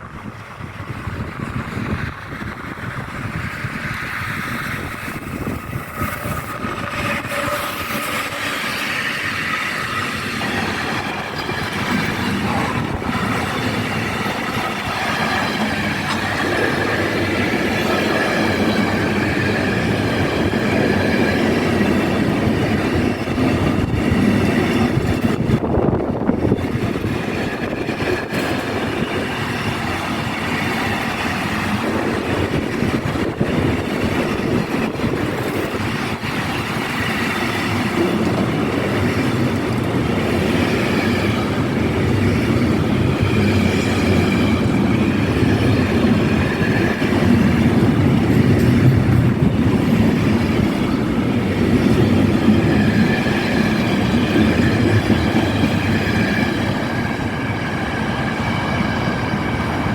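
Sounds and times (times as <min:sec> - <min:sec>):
train wheels rumbling: 0:00.0 - 0:59.9.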